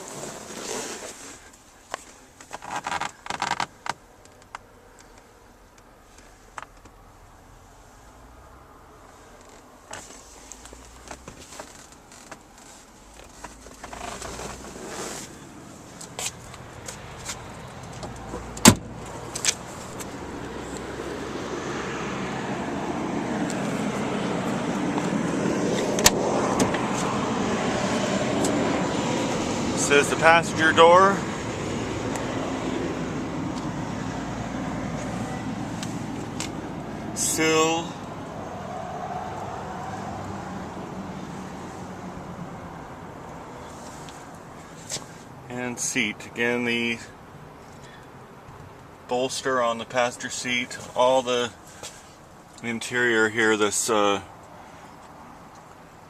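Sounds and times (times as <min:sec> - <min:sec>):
car door shutting: 0:17.2 - 0:20.1, 0:24.9 - 0:27.2.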